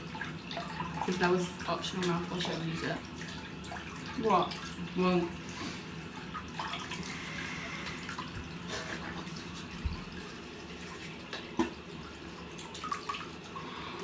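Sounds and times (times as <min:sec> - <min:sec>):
tap running into sink: 0:09.7 - 0:10.2.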